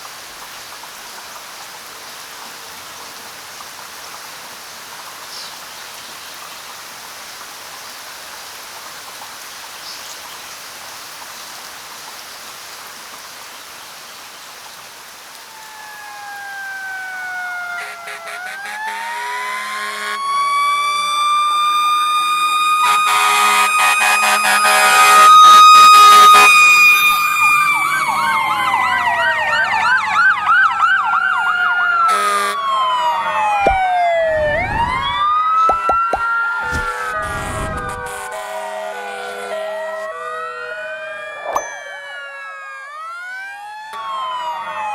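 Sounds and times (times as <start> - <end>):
steady rain: 0.0 - 41.3
siren-style alarm wailing: 15.4 - 44.9.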